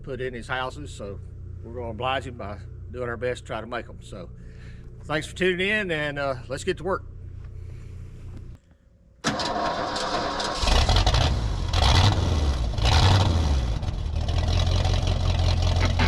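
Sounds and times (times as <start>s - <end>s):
engine starting and rumbling: 9.2s - 16.0s.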